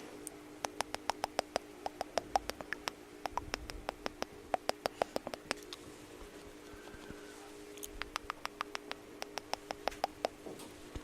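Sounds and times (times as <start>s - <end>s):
light tapping of makeup dabbing: 0.6s - 5.6s, 8.0s - 10.4s.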